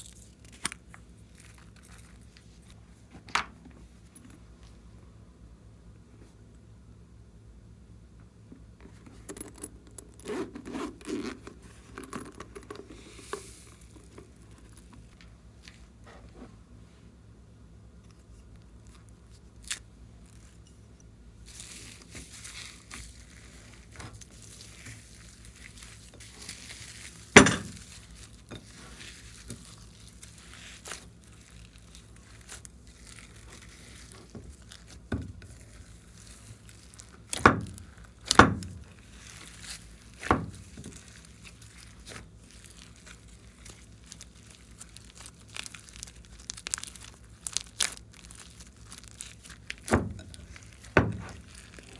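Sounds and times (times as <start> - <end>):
slime crinkling and crackling: 0.0 - 2.8, 10.1 - 15.8, 18.1 - 51.9
hands squishing slime: 21.5 - 51.9
slime popping: 24.4 - 51.9.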